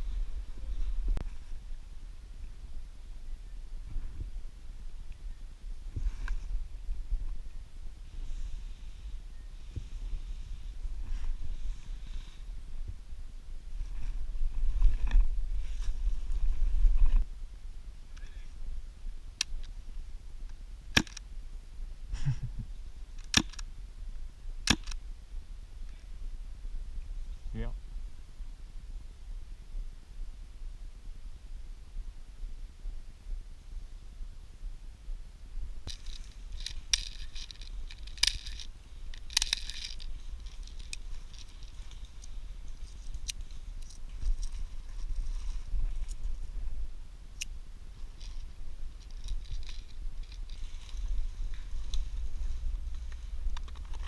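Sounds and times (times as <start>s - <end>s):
steady low rumble: 0.0s - 54.0s
sharp clicks: 23.2s - 23.7s, 24.6s - 25.0s
dry leaves and twigs crackling: 35.8s - 54.0s.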